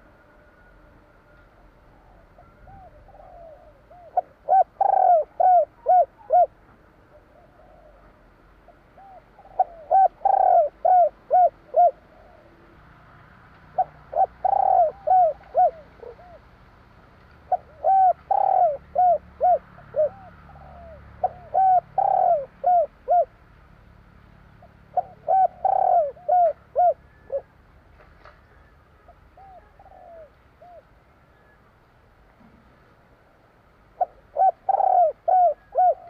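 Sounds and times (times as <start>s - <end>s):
dove cooing: 1.8s - 12.8s, 13.7s - 16.6s, 17.4s - 23.4s, 24.6s - 27.6s, 28.5s - 31.6s, 33.9s - 36.0s.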